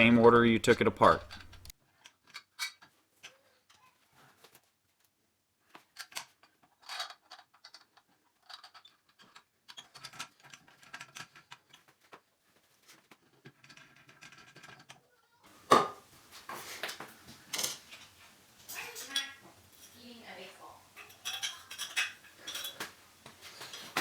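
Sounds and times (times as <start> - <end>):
small parts clicking and rattling: 5.7 - 12.2, 12.8 - 15.2, 16.8 - 20.2, 20.9 - 24.0.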